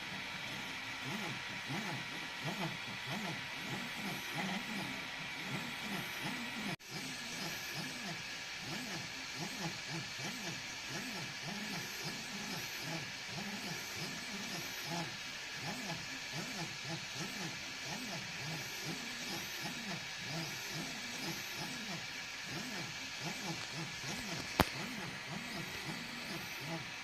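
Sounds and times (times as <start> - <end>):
printer stepper motors whirring: 0.0 - 27.0
sharp click: 23.5 - 24.9.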